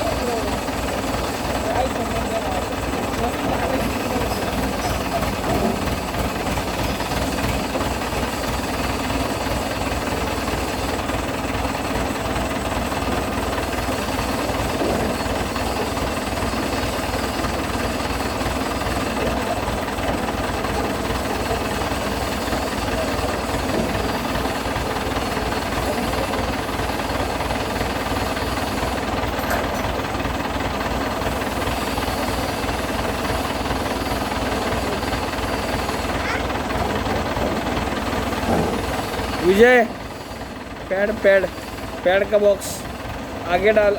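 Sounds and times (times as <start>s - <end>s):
tray washing machine running: 0.0s - 43.9s.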